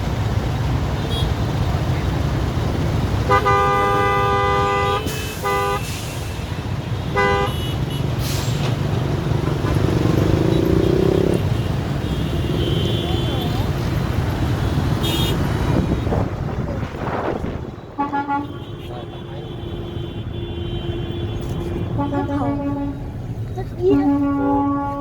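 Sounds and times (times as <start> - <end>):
road traffic rumble: 0.0 - 25.0
vehicle horn honking: 3.2 - 5.9, 7.0 - 8.1, 11.5 - 13.6, 14.9 - 16.2, 17.8 - 23.1, 23.9 - 25.0.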